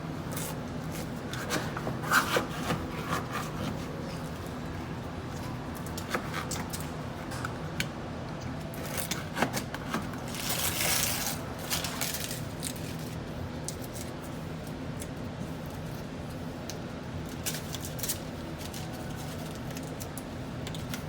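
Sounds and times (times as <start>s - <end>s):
steady low hum: 0.0s - 21.0s
scraping rub across paper: 1.0s - 4.0s.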